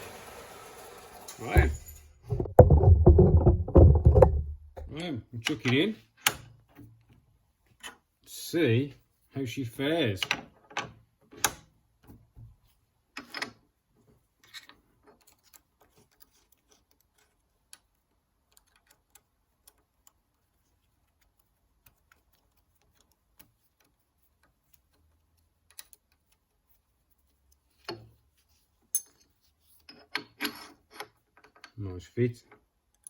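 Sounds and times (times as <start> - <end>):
louder knocks: 1.6 - 4.9
small metallic clicks and taps: 14.4 - 26.6.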